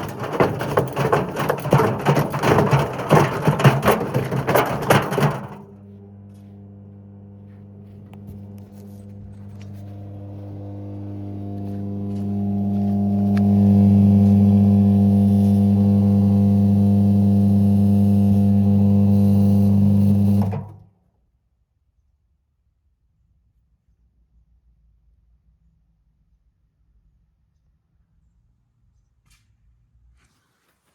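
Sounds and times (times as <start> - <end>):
washing machine humming: 0.0 - 20.8.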